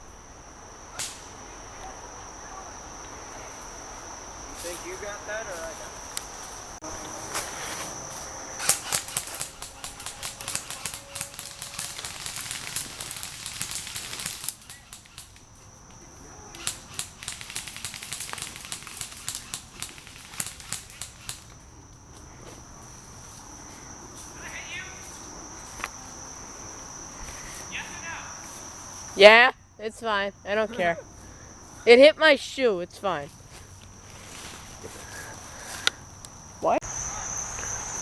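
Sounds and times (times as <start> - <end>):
crickets chirring: 0.0 - 38.0
airsoft guns rapid firing: 8.6 - 15.3, 16.6 - 21.5.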